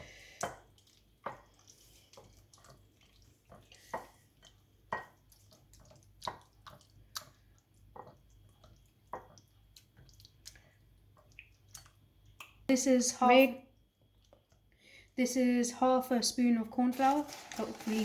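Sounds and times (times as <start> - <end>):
wet squelches of meat in marinade: 0.1 - 12.7.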